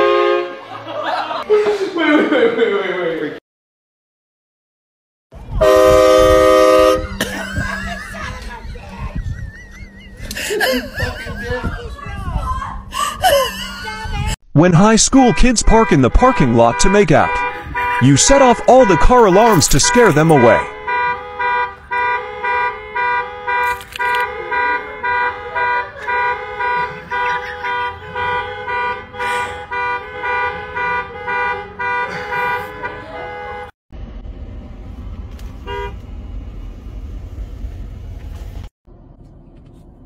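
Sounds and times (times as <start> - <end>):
car alarm horns honking: 0.0 - 0.8, 5.6 - 10.3, 14.7 - 33.8, 35.6 - 36.0.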